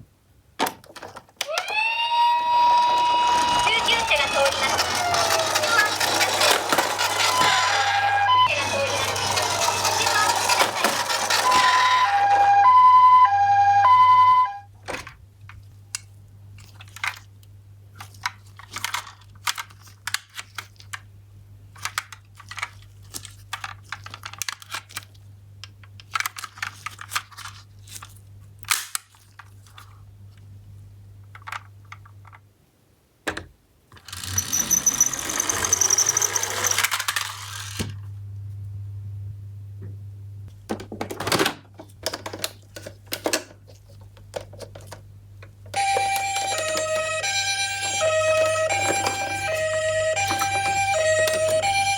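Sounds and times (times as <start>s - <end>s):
toy two-tone siren: 1.5s - 14.7s, 34.4s - 36.8s, 45.8s - 51.9s
toy cars clicking and clattering: 2.5s - 12.8s, 16.6s - 21.1s, 21.7s - 30.0s, 31.3s - 32.4s, 33.9s - 38.0s, 45.8s - 51.9s.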